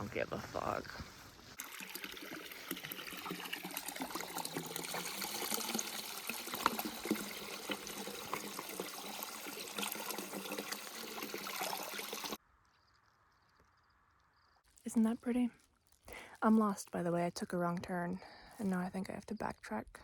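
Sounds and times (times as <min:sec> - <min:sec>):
stream trickling and splashing: 0:00.0 - 0:12.4.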